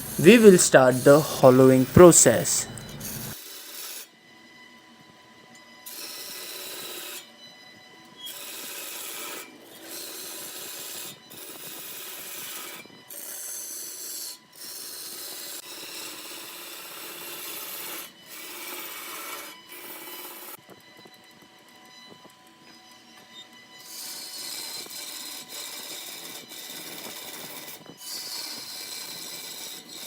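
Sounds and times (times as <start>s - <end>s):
lathe tool scraping wood: 0.0s - 2.0s, 2.7s - 3.4s, 23.9s - 30.0s.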